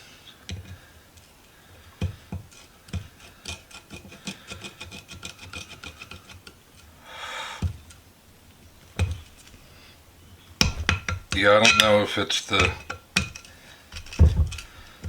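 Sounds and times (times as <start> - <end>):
metal tool knocks: 10.6 - 12.0.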